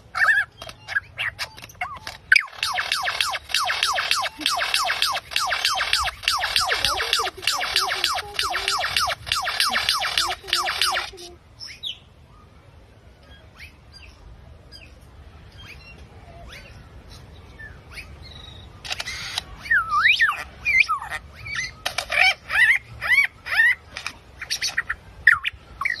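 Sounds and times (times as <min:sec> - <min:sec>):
bird calling: 0:00.0 - 0:12.0.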